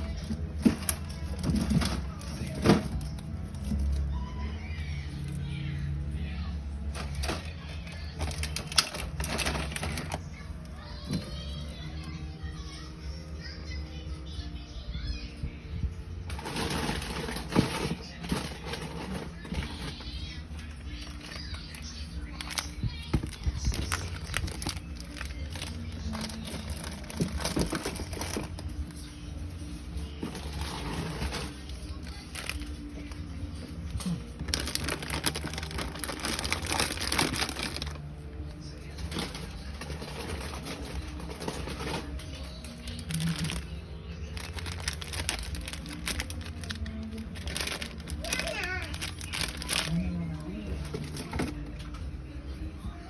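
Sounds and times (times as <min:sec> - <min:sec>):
background music: 0:00.0 - 0:53.0
plastic packaging crinkling: 0:06.8 - 0:11.8, 0:16.3 - 0:29.2, 0:30.1 - 0:38.2, 0:38.9 - 0:51.7.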